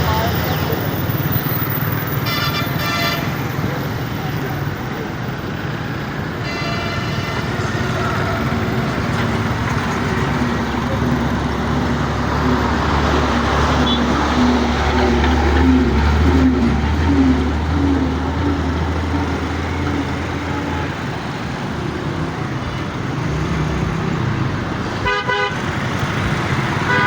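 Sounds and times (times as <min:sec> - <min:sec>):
heavy vehicle engine rumbling: 0:00.0 - 0:27.0
road traffic noise: 0:00.0 - 0:27.0
car horn toot: 0:02.2 - 0:03.5, 0:06.4 - 0:08.6, 0:13.7 - 0:14.6, 0:25.0 - 0:25.7, 0:26.8 - 0:27.0.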